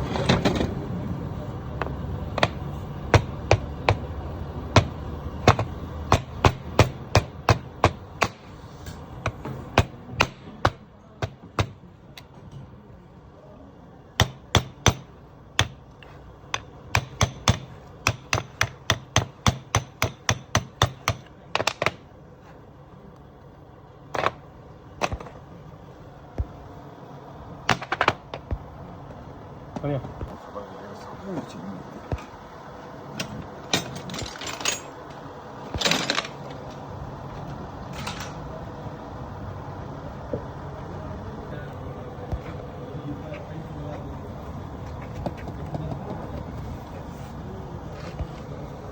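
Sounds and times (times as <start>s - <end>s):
steady low hum: 0.0s - 48.9s
hammer striking metal: 4.7s - 11.8s, 14.2s - 15.8s, 16.5s - 22.0s
harsh metal rattle: 33.1s - 36.7s
metal tools clinking: 33.2s - 36.7s, 37.9s - 38.5s.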